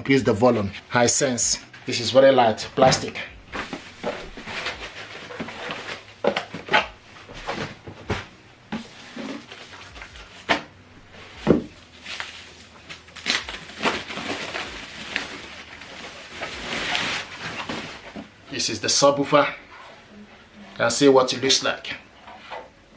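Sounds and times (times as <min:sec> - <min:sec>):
packaging crinkling and rustling: 0:01.6 - 0:18.6.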